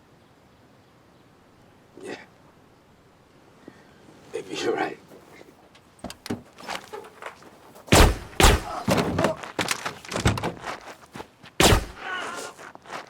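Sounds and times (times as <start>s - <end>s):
heavy thuds and knocks of blows: 7.8s - 10.9s, 11.6s - 12.0s.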